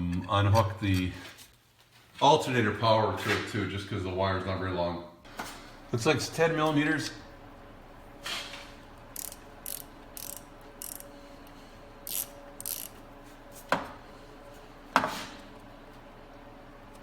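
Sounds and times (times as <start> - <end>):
ratchet wrench clicking: 9.2 - 11.1, 12.0 - 13.0.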